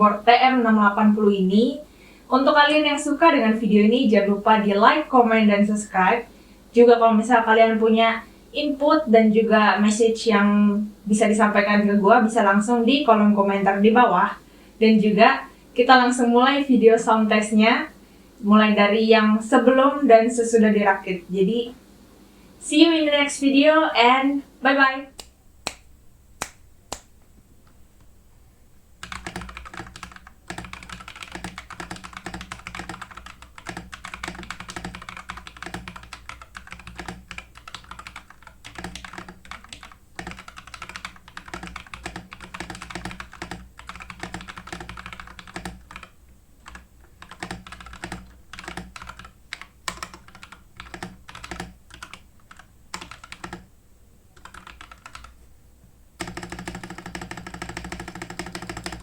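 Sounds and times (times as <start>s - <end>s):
mechanical keyboard typing: 29.0s - 53.7s, 54.4s - 55.4s, 56.2s - 59.0s.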